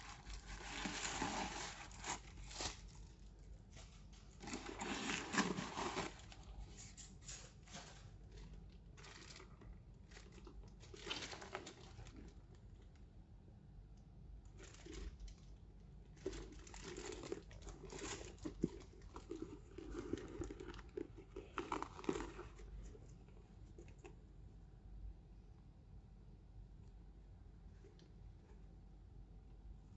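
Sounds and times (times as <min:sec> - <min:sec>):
wrapping crinkling and rustling: 0:00.0 - 0:13.0, 0:14.5 - 0:24.2.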